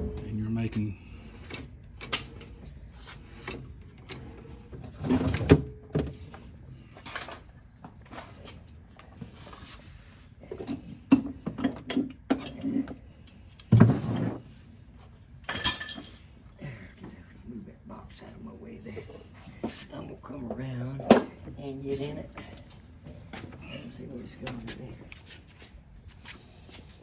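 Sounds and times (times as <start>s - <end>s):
tools and parts clattering: 0.0s - 8.4s, 10.5s - 14.4s, 15.4s - 16.4s.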